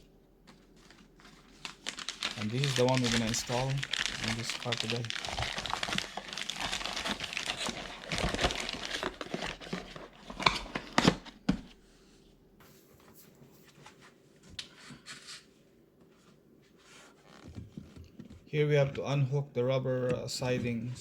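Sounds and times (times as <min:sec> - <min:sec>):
faint steady hum: 0:00.0 - 0:21.0
plastic packaging crinkling: 0:00.4 - 0:11.4.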